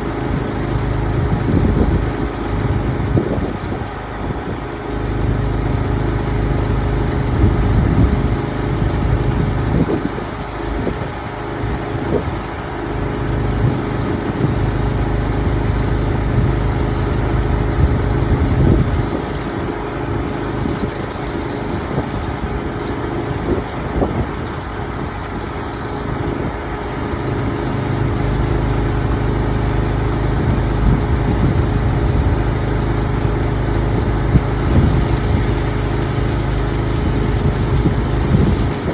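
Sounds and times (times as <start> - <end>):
machine motor humming: 0.0 - 38.9.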